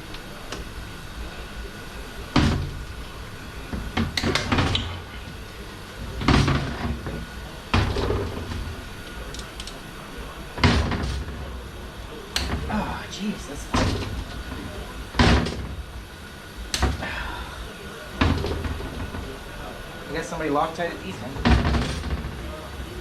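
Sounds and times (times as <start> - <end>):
metal parts clunking and clattering: 2.3 - 9.8, 10.5 - 11.7, 12.4 - 16.1, 18.1 - 23.0.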